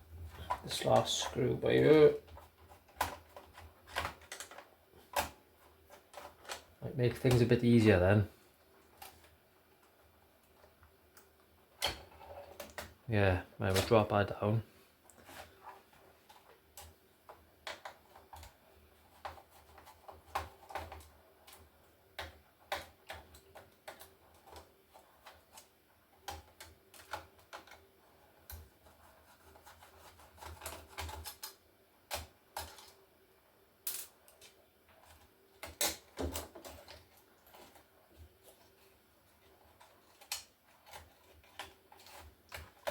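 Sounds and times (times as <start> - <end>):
laptop parts clicking and tapping: 2.2 - 7.5, 16.2 - 33.0.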